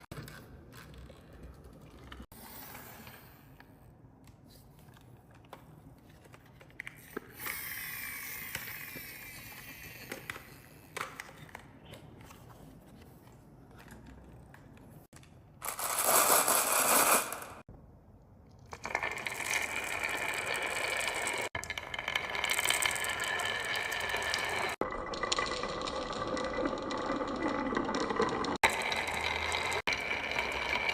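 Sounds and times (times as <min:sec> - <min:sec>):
marbles rolling down wooden track: 0:15.6 - 0:17.6, 0:18.7 - 0:30.9
marbles clicking against track: 0:18.7 - 0:30.9.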